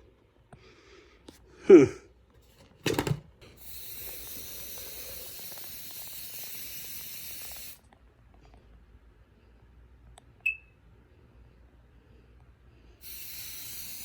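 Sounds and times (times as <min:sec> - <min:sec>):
object falling: 0:02.4 - 0:03.4
aerosol spray hissing: 0:03.4 - 0:07.8, 0:13.0 - 0:14.0.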